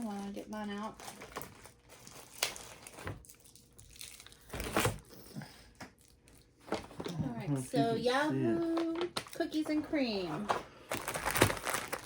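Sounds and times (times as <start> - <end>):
plastic packaging crinkling: 0.0 - 5.1, 10.8 - 12.0.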